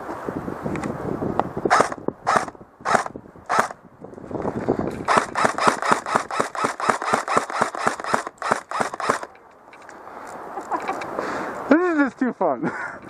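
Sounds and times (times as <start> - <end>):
airsoft rifle firing: 5.1 - 9.3.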